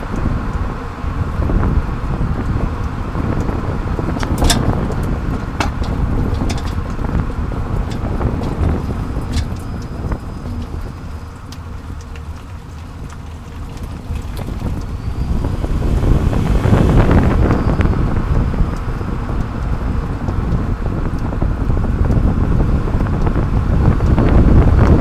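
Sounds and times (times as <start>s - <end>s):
road and tyre noise: 0.0s - 25.0s
wind buffeting microphone: 0.0s - 25.0s.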